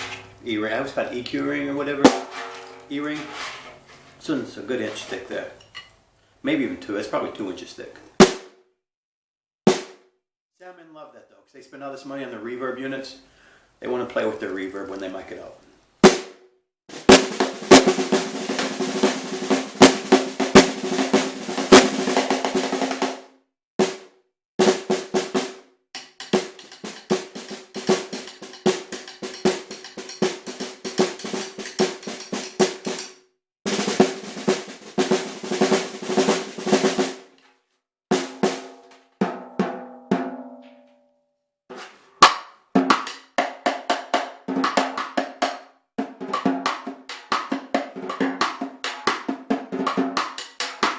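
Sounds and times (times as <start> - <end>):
ringing snare drum hits: 0.0 - 5.5, 26.4 - 33.1
muffled snare drum rolls: 0.0 - 5.6, 6.5 - 8.5, 9.7 - 10.0, 16.1 - 25.6, 26.2 - 33.1, 33.7 - 37.3, 38.1 - 38.7.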